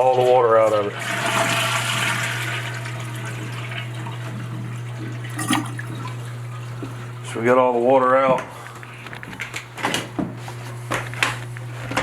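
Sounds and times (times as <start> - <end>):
toilet flushing: 0.0 - 8.2.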